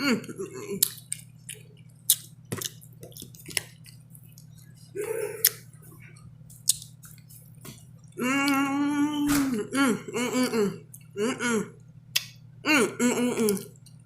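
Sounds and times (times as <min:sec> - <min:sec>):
person humming mmm: 0:00.0 - 0:01.0, 0:04.9 - 0:05.7, 0:08.1 - 0:14.0.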